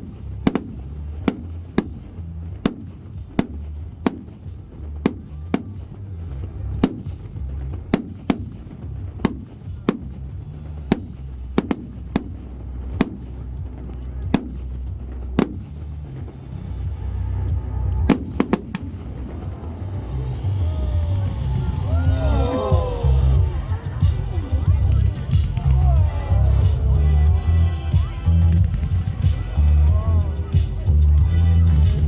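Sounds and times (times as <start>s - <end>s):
fireworks banging: 0.0s - 17.0s, 17.9s - 19.7s
low continuous rumble: 0.0s - 28.6s.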